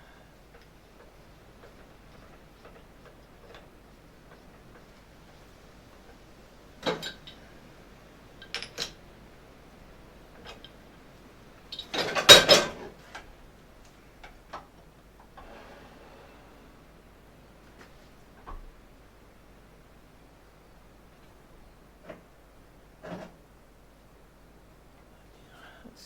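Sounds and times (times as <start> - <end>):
small metal parts clinking: 8.4 - 9.0.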